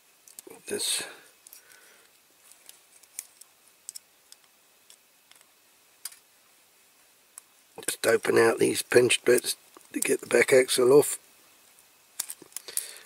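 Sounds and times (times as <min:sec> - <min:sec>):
small tools clicking and tapping: 0:12.2 - 0:12.9.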